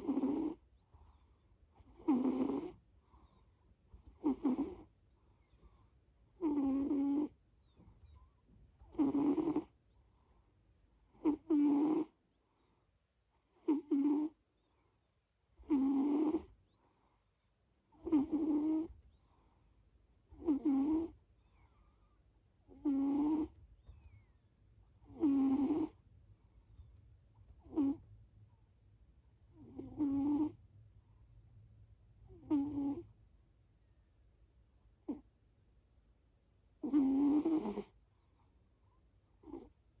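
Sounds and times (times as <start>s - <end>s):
pet snoring: 0.0s - 1.2s, 1.8s - 5.8s, 6.4s - 7.8s, 8.8s - 9.8s, 11.1s - 12.2s, 13.5s - 14.4s, 15.6s - 16.6s, 17.9s - 19.0s, 20.3s - 23.6s, 25.0s - 26.0s, 27.6s - 28.1s, 29.5s - 30.6s, 32.3s - 33.2s, 35.0s - 35.3s, 36.8s - 38.0s, 39.4s - 39.8s
faint breath: 2.9s - 4.0s.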